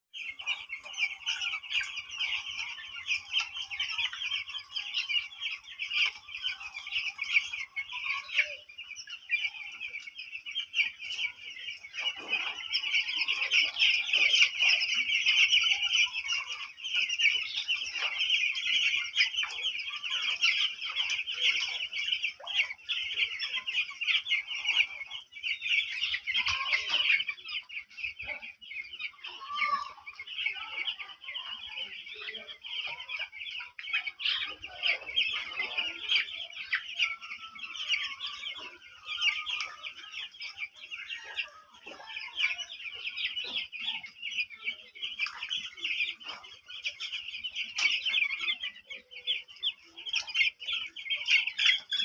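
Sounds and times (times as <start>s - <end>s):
chickens clucking: 0.1s - 52.0s
chicks cheeping: 0.1s - 52.0s.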